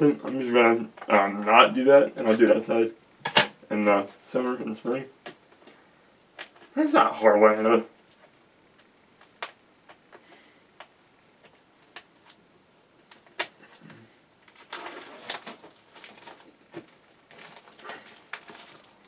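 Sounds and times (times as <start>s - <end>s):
rustling: 3.8s - 19.0s.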